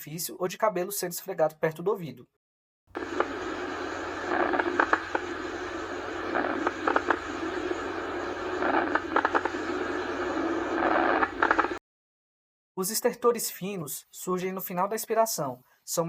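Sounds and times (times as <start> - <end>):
lung crackles: 3.0 - 11.8.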